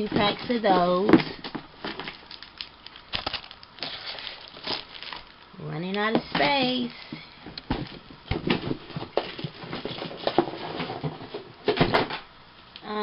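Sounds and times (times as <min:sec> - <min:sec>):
packaging rustling: 0:00.0 - 0:05.5, 0:06.6 - 0:11.2.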